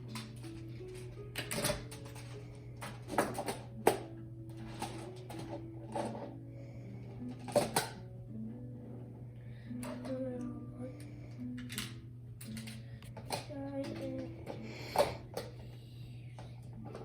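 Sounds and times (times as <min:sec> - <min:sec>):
plastic tiles clacking together: 0:00.0 - 0:06.3, 0:11.6 - 0:15.6
steady low hum: 0:00.0 - 0:17.0.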